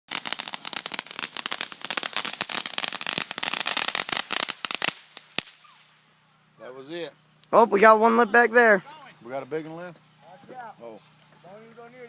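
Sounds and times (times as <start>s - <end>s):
firecrackers popping: 0.1s - 6.0s.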